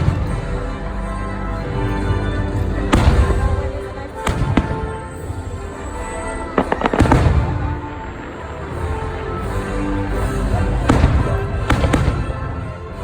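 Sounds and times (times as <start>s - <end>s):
music playing: 0.0s - 13.0s
fireworks bangs: 2.8s - 12.8s.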